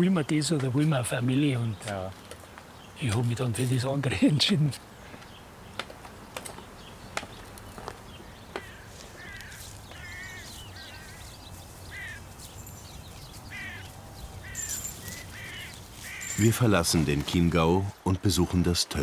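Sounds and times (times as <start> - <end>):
birds giving short harsh calls: 6.6 - 16.6.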